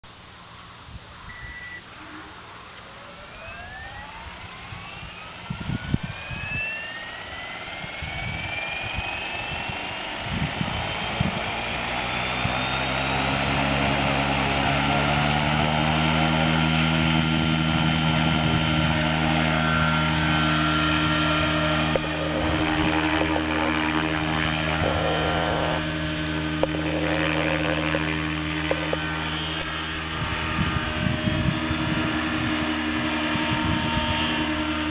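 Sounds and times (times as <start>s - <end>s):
electric helicopter motor whine: 0.1s - 34.9s
helicopter rotor: 0.2s - 34.9s
wind buffeting microphone: 4.7s - 6.7s, 7.3s - 13.7s, 17.2s - 34.9s.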